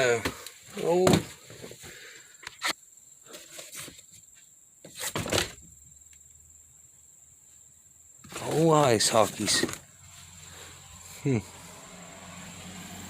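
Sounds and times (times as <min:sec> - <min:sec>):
knocks and rustles of handling: 0:00.0 - 0:05.7, 0:08.2 - 0:10.2.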